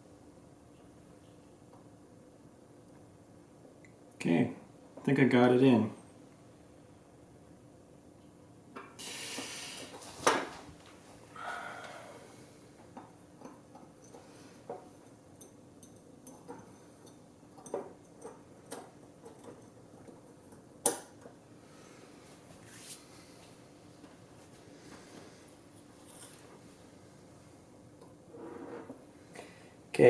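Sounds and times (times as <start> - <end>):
small tools clicking and tapping: 12.8 - 21.4
rustling scrape: 22.6 - 23.2.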